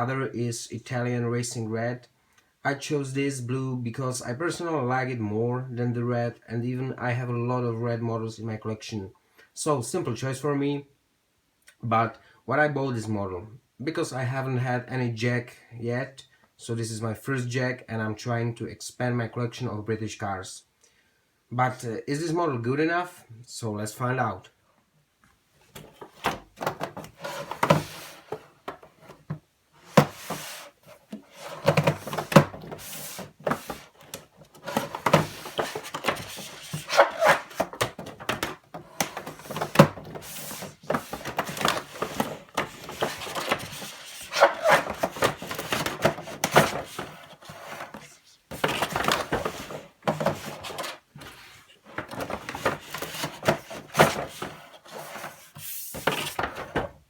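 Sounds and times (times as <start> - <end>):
cardboard packaging scraping and knocking: 25.6 - 57.0.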